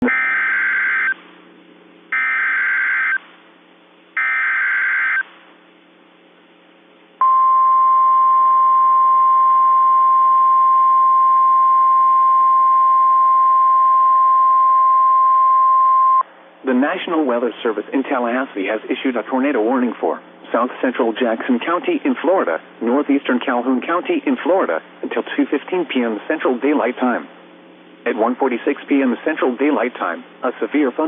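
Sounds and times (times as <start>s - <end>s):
steady warning alarm tone: 0.0s - 1.2s, 2.1s - 3.2s, 4.2s - 5.3s.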